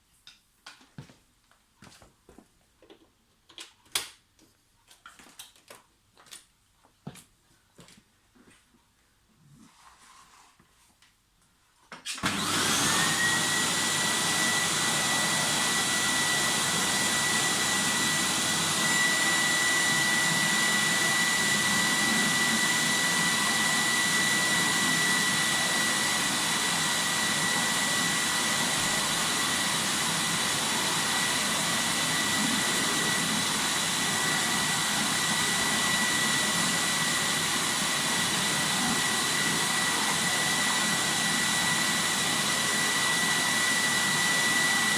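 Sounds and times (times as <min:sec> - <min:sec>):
vacuum cleaner whining: 0:12.1 - 0:44.9.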